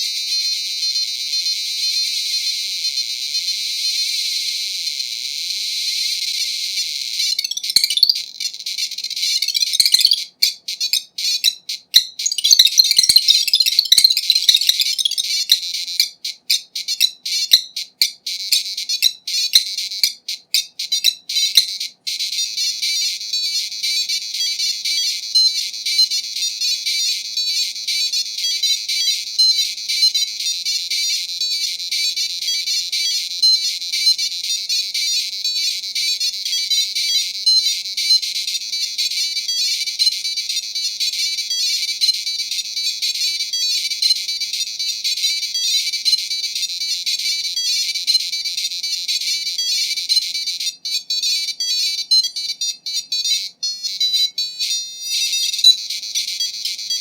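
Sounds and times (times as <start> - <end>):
computer speaker beeping music: 7.3 - 8.2, 9.2 - 10.3, 10.9 - 16.1, 35.4 - 57.0.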